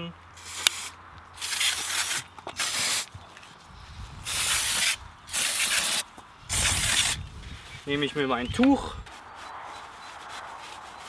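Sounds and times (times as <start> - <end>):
aerosol spray hissing: 4.3 - 7.2.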